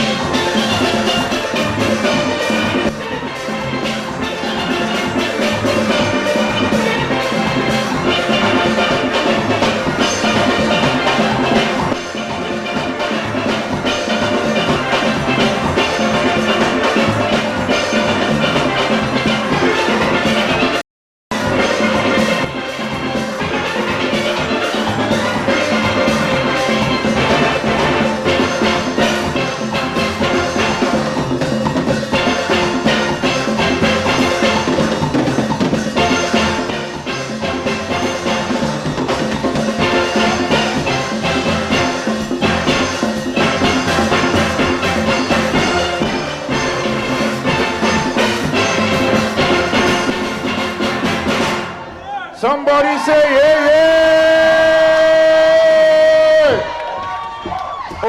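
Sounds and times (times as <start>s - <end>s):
drums and percussion: 0.0s - 58.0s
steel band playing steelpans: 0.0s - 58.0s.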